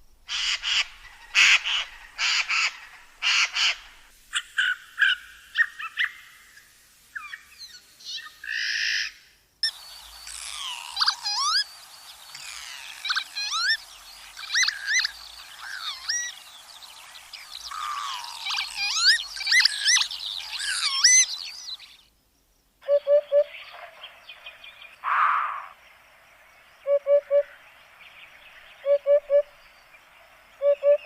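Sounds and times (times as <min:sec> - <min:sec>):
steady background hiss: 0:00.0 - 0:31.0
bird calling and chirping: 0:09.6 - 0:22.1, 0:28.2 - 0:31.0
bird singing whistled notes: 0:09.6 - 0:22.1.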